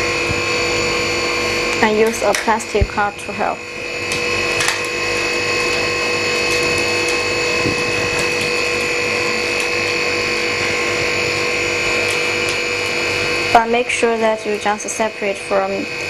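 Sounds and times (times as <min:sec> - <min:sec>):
machine hum and whine: 0:00.0 - 0:16.0.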